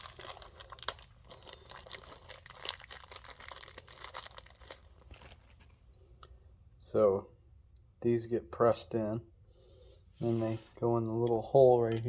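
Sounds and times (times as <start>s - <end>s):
plastic bag crinkling: 0.0s - 5.8s.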